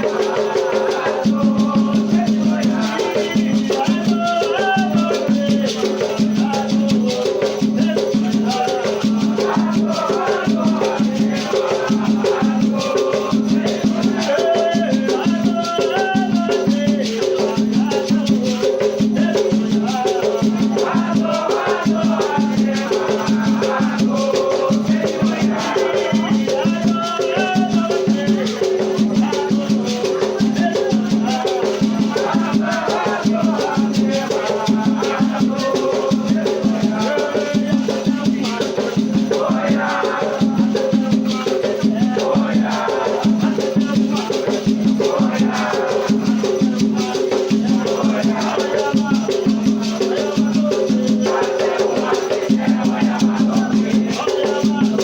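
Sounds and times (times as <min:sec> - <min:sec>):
chanted singing: 0:00.0 - 0:55.0
shaker rattles: 0:00.0 - 0:55.0
drums: 0:31.8 - 0:55.0.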